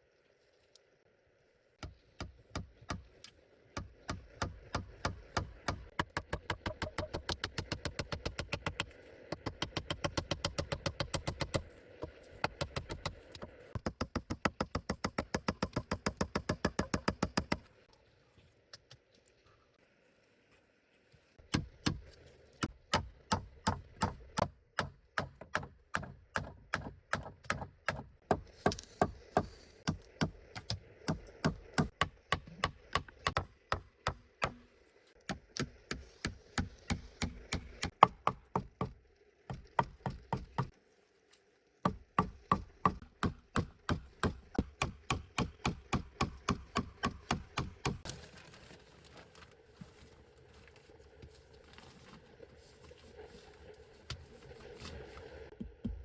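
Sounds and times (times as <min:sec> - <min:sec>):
blade chopping wood: 0:03.8 - 0:17.6, 0:35.3 - 0:40.7, 0:41.9 - 0:48.1.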